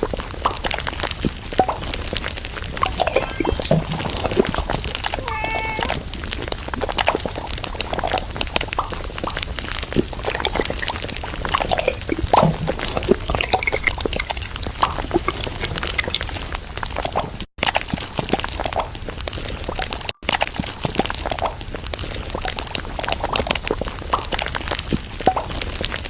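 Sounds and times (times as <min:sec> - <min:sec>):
containers and bottles clattering: 0:10.0 - 0:16.4.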